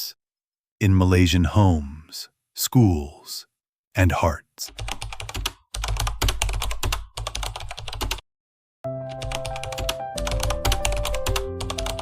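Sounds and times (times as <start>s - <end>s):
rapid typing on keyboard: 4.7s - 8.2s, 9.1s - 12.0s
music with sustained notes: 8.9s - 12.0s.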